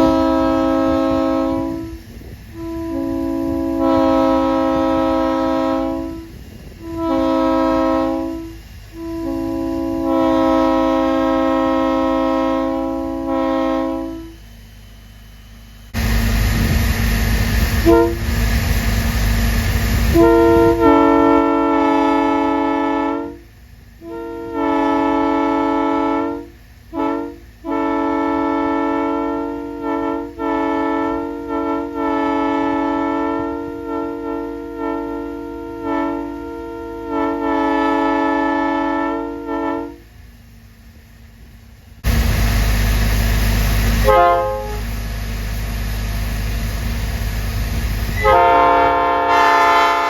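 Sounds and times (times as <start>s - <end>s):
locomotive air horn blasts: 0.0s - 14.6s, 17.8s - 18.4s, 20.0s - 40.1s, 43.9s - 45.0s, 48.1s - 50.0s.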